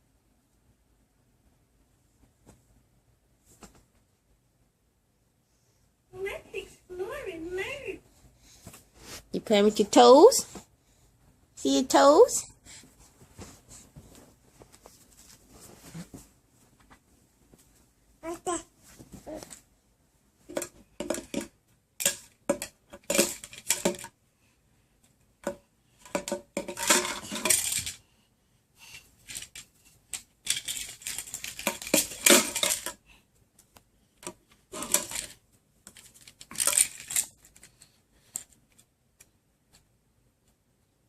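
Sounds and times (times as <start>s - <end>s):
small hard objects clattering: 20.5s - 24.1s, 26.1s - 28.0s, 29.3s - 33.0s, 34.8s - 37.6s.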